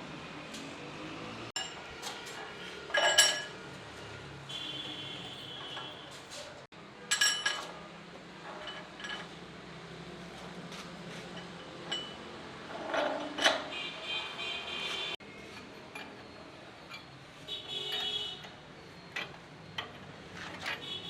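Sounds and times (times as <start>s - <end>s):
metal tools clinking: 1.6s - 3.6s, 7.1s - 7.8s, 8.4s - 9.4s, 11.3s - 13.7s.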